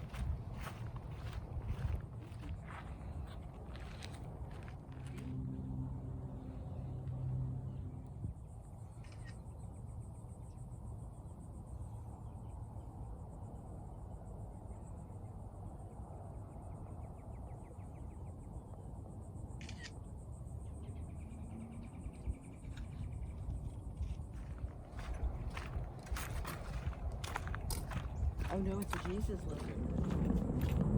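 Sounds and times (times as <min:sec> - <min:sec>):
low rumble: 0:21.9 - 0:30.9.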